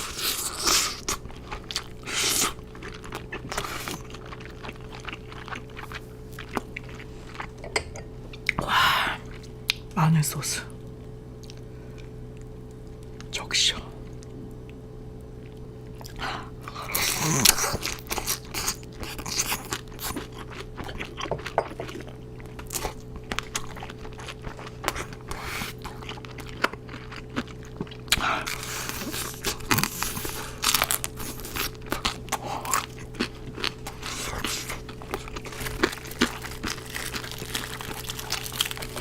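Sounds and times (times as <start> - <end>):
wet chewing: 0.0 - 8.6, 15.4 - 39.0
steady low hum: 0.0 - 39.0
crunching bites of fried food: 15.4 - 39.0.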